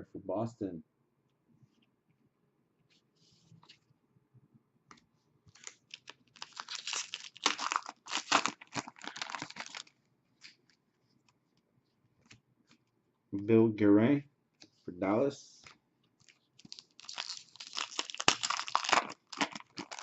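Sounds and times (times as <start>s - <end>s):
foil wrapper tearing and crinkling: 5.6s - 9.9s, 16.2s - 20.0s.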